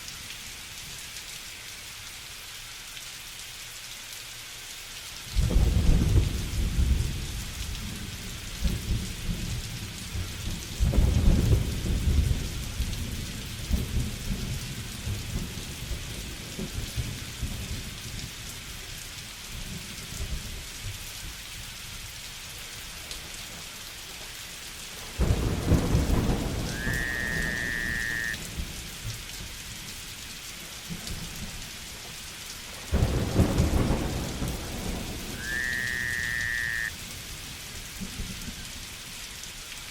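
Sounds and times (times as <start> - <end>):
heavy rain: 0.0 - 39.9
thunderclaps rumbling: 25.2 - 28.8, 32.9 - 37.3
short high whistling call: 26.7 - 28.4, 35.4 - 36.9.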